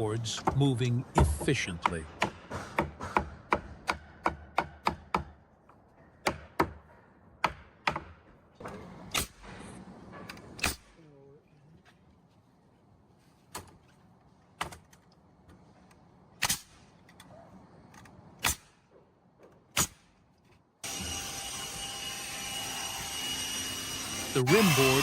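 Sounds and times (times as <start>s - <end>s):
nail gun firing into timber: 9.1s - 9.5s, 18.4s - 18.8s, 19.7s - 20.1s
power tool whine: 20.8s - 25.0s.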